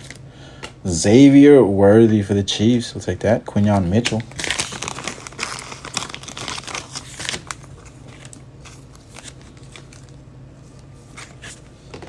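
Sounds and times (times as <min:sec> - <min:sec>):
foil wrapper crinkling: 0:03.6 - 0:10.2.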